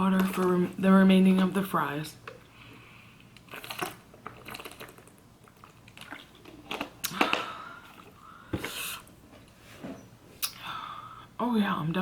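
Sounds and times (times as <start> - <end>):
fries being chewed: 3.2 - 8.3.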